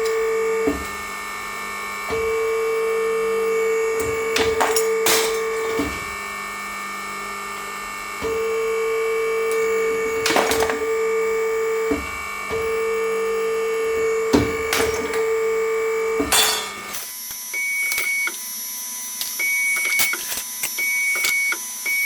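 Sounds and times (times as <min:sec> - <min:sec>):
cutting machine humming: 0:00.0 - 0:17.5.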